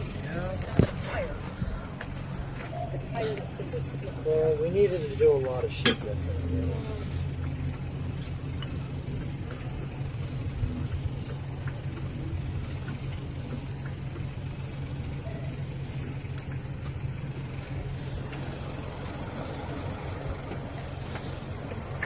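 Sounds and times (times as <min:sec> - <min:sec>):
vehicle engine idling: 0:00.0 - 0:22.0.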